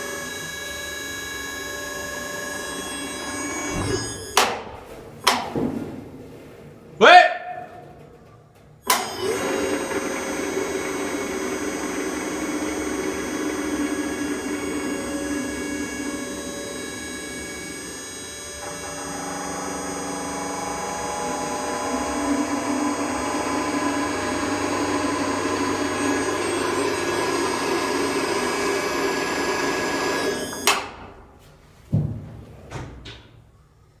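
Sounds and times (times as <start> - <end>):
machine with whining bearing: 0.0 - 4.5, 8.8 - 31.0.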